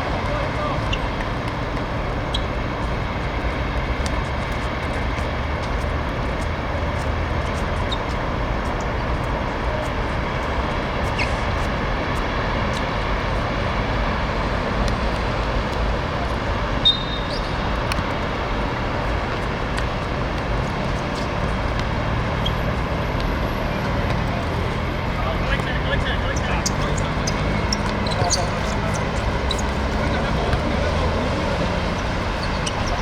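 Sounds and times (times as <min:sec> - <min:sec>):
traffic: 0:00.0 - 0:33.0
wind: 0:00.0 - 0:33.0
brief high whistle: 0:16.8 - 0:17.4.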